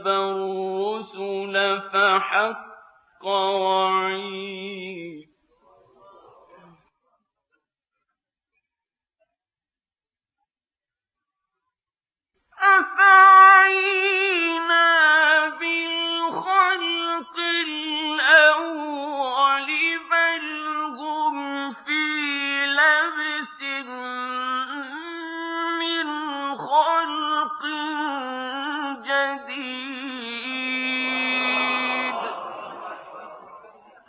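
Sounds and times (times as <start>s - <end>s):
man chanting melodically: 0.0s - 5.2s, 12.6s - 33.6s.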